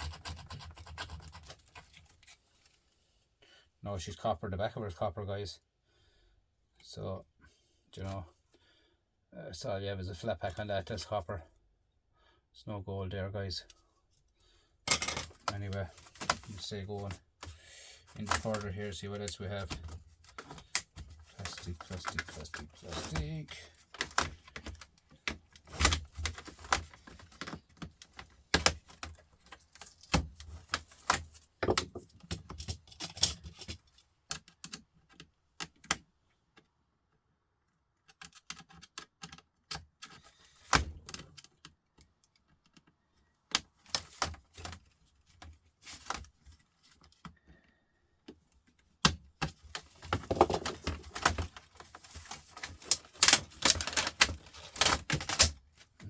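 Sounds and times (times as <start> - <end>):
plastic casing clicking and cracking: 49.0 - 55.6.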